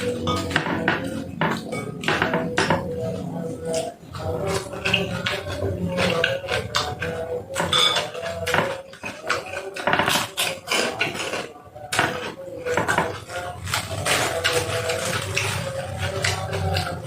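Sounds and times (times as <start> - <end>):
spoon clinking against a bowl: 0.0 - 3.0, 4.5 - 11.5.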